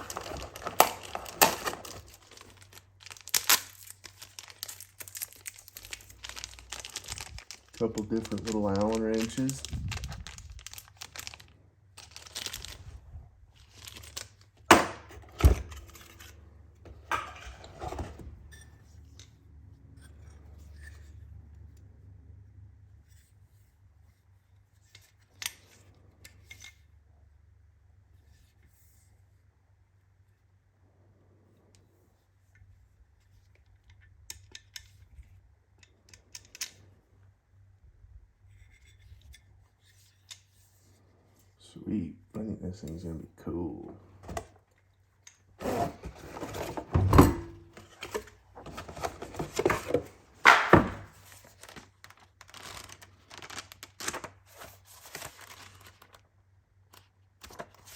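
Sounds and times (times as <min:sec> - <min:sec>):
packaging crinkling and rustling: 0:00.0 - 0:18.3, 0:44.1 - 0:57.9.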